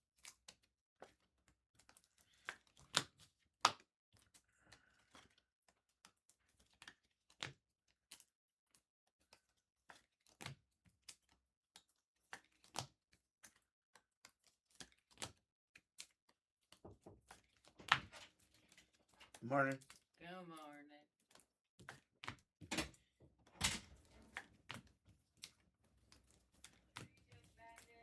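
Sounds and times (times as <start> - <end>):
faint irregular clicks and taps: 0.2 - 20.1.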